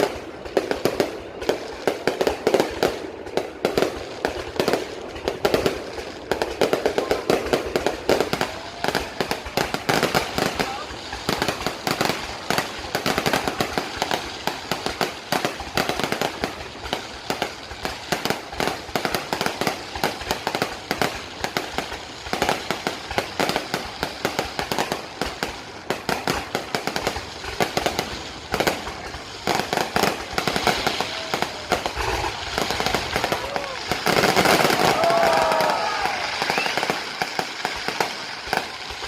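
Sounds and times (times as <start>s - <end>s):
fireworks bangs and crackles: 0.0s - 39.0s.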